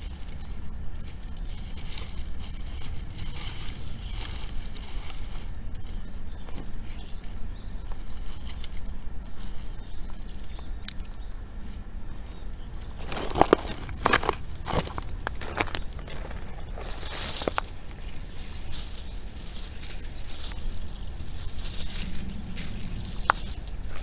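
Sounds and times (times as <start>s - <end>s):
loud crunching steps: 0.0s - 10.9s, 11.6s - 24.0s
wood fire crackling: 0.0s - 24.0s
wind on microphone: 12.2s - 24.0s.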